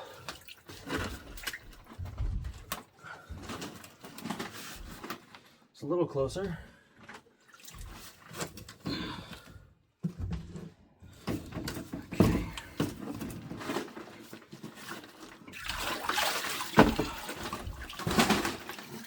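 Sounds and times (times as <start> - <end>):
water sloshing and splashing: 0.0 - 5.4, 7.0 - 8.8, 11.4 - 19.0
pvc pipe knocking: 16.8 - 18.2.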